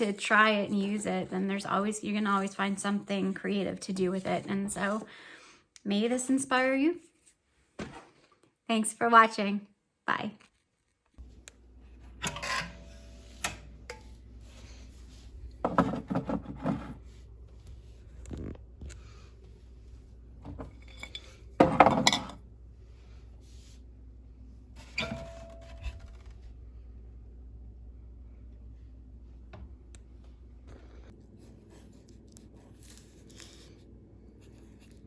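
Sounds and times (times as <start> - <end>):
low steady hum: 11.2 - 35.0
dishes and utensils clattering: 12.2 - 14.2, 20.4 - 22.4, 24.8 - 26.2.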